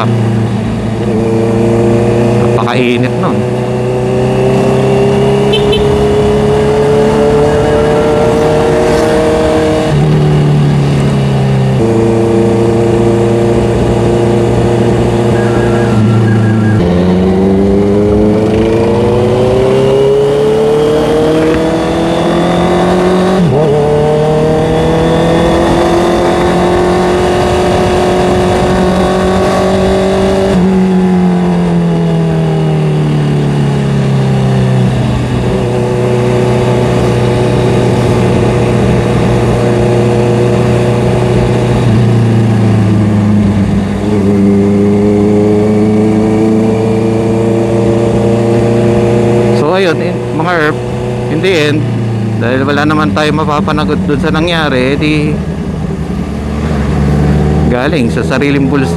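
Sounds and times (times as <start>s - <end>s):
motorcycle engine revving: 0.0s - 58.9s
road noise: 0.0s - 58.9s.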